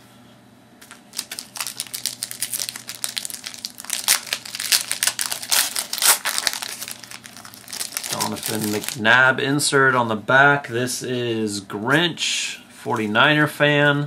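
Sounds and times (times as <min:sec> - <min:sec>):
plastic wrapper crinkling and tearing: 0:00.8 - 0:09.0.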